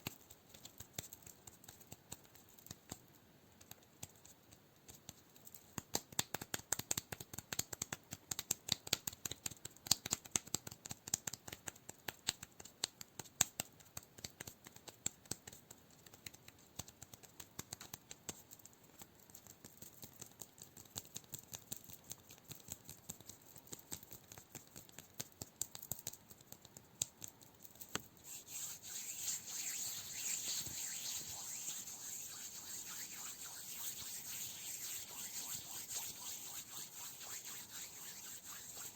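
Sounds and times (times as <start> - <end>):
steady scratching rub: 28.1 - 38.9.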